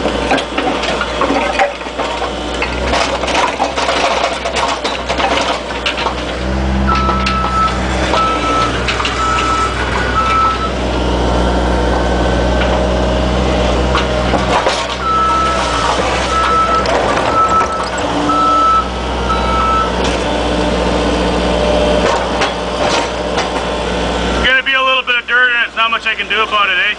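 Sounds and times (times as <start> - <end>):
knocks and clanks: 0.0 - 10.8, 11.8 - 13.0, 13.6 - 20.4, 22.0 - 23.7
excavator engine running: 0.0 - 26.9
travel alarm beeping: 6.9 - 10.8, 15.0 - 15.6, 16.3 - 20.0.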